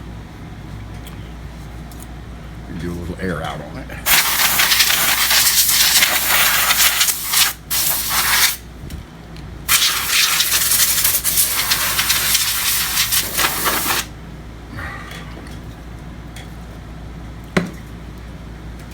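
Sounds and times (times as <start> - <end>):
compressed air hissing: 4.0 - 8.6, 9.7 - 14.1.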